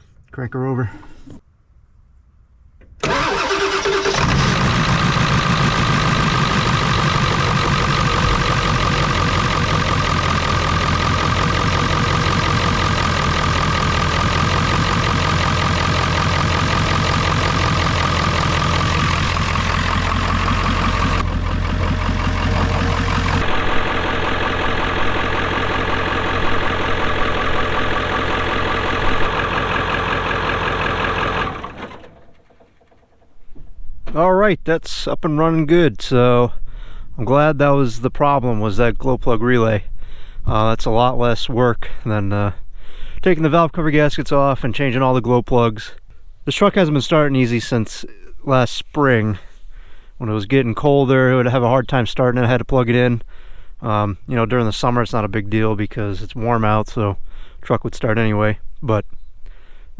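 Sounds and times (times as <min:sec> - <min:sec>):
diesel engine cranking: 0:02.9 - 0:33.6
diesel engine idling: 0:03.0 - 0:33.2.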